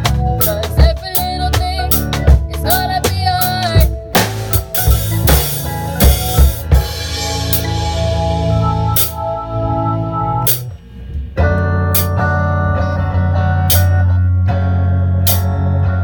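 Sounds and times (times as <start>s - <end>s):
drum kit beat: 0.0s - 10.8s, 11.4s - 12.2s, 13.7s - 14.0s, 15.3s - 15.6s
bass line: 0.0s - 16.0s
wavering melody line: 3.6s - 11.6s.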